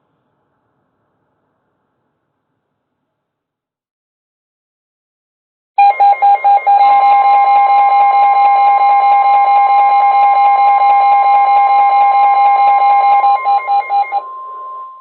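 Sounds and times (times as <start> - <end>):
radio alarm beeping rapidly: 5.8 - 15.0
steady warning tone: 5.8 - 15.0.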